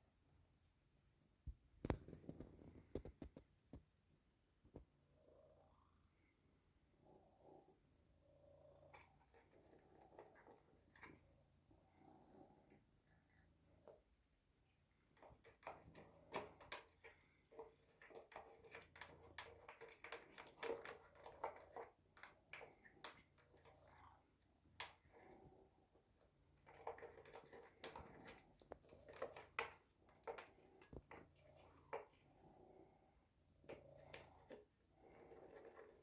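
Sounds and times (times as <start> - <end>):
cats pawing with light clicks: 15.1 - 32.4, 33.6 - 36.0.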